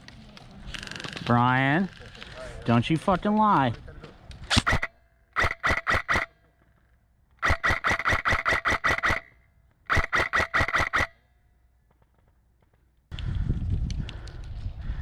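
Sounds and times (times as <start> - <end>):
airsoft gun firing bursts: 4.5 - 6.3, 7.4 - 9.3, 9.9 - 11.2.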